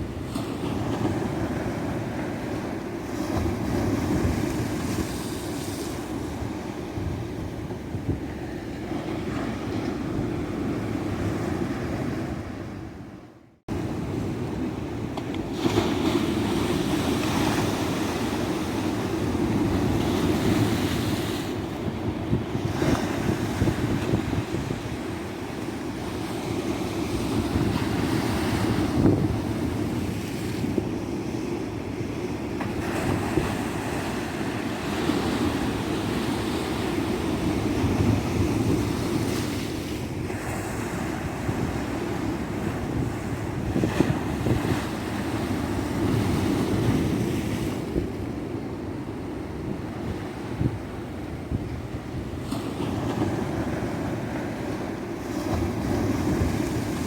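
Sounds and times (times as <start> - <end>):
wind buffeting microphone: 0.0 - 13.1, 13.7 - 57.0
ocean surf breaking: 13.7 - 30.8.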